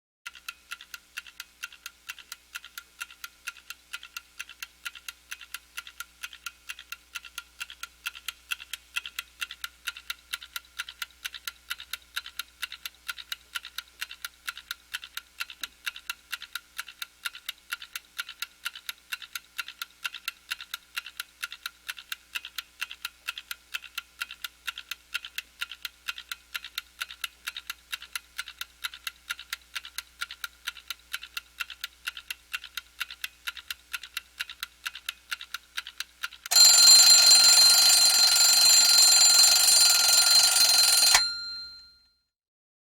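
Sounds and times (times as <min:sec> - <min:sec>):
clock ticking: 0:00.3 - 0:41.9.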